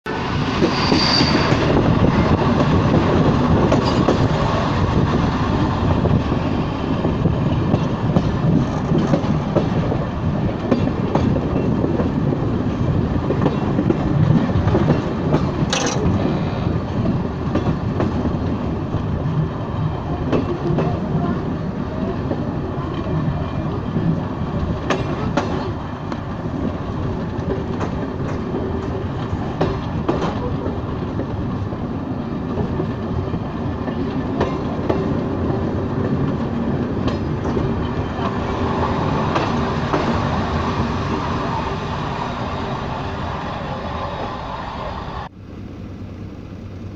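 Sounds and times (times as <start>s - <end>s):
train rumbling: 0.1s - 46.9s
high squeal: 0.2s - 2.3s
wheels clacking over rails: 0.6s - 19.0s, 22.3s - 42.5s.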